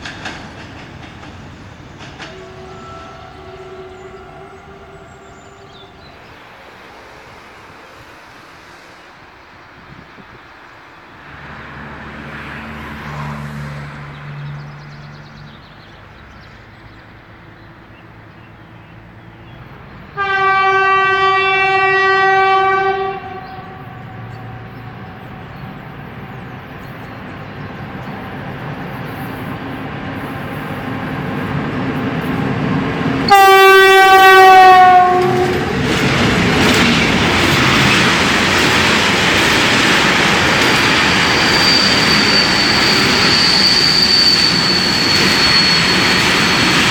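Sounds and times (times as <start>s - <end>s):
train wheels rumbling on rails: 0.0s - 14.6s, 15.4s - 46.9s
train horn blasts: 2.2s - 6.2s, 20.1s - 25.5s, 33.2s - 35.8s.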